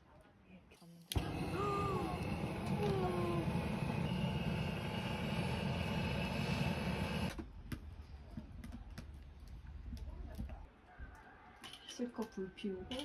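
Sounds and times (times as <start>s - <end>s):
butane torch flame roaring: 1.1s - 7.4s.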